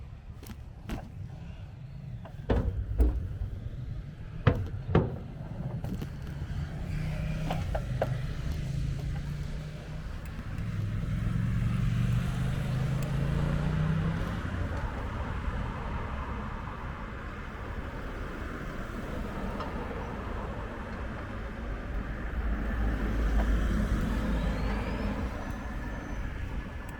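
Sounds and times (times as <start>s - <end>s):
bicycle ride noise: 0.0s - 26.9s
motor vehicle engine hum: 0.0s - 26.9s
bicycle knocking over bumps: 2.2s - 9.6s.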